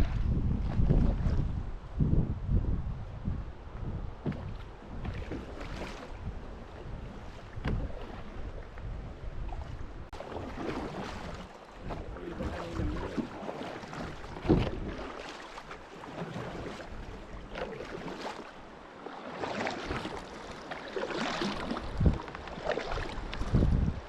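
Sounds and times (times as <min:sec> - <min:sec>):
wind noise: 0:00.0 - 0:13.2, 0:21.4 - 0:24.0
water noise: 0:00.0 - 0:24.0
dull knocks on kayak: 0:04.2 - 0:05.5, 0:07.6 - 0:08.0, 0:14.4 - 0:14.9.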